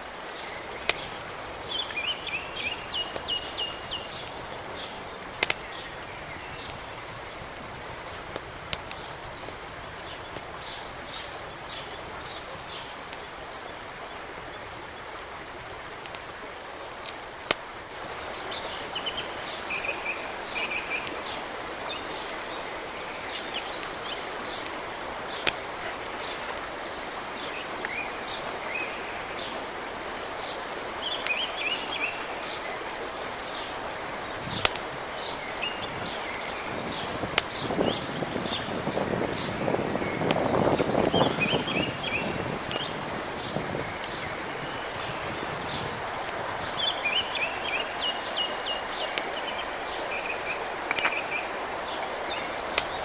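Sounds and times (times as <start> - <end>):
forest ambience hiss: 0.0 - 53.0
small birds chirping: 0.0 - 53.0
sharp clicks or snaps: 0.6 - 32.9, 33.6 - 51.6, 52.4 - 53.0.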